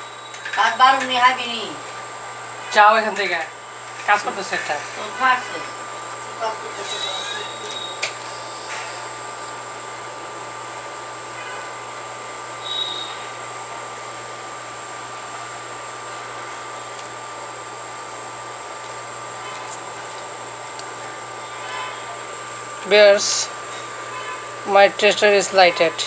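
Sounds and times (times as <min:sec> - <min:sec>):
background hum and hiss: 0:00.0 - 0:26.0.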